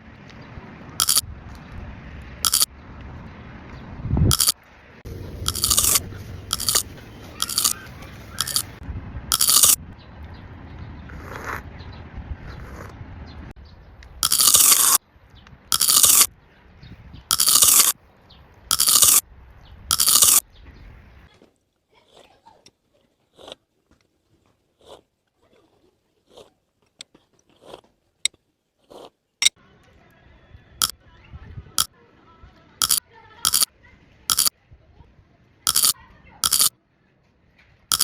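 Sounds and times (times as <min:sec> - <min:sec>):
crunching bites of sweets: 0:01.0 - 0:01.2, 0:05.4 - 0:09.8, 0:14.2 - 0:15.0, 0:15.7 - 0:16.3, 0:17.3 - 0:18.0, 0:18.7 - 0:19.2, 0:19.9 - 0:20.4, 0:21.3 - 0:29.6, 0:35.7 - 0:36.7
chewing with mouth clicks: 0:05.4 - 0:08.7, 0:21.9 - 0:29.1.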